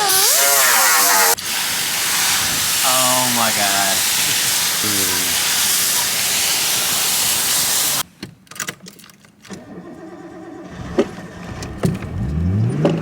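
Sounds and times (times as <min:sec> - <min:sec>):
loud steady hiss: 0:00.0 - 0:08.0
car engine starting and running: 0:09.4 - 0:13.0.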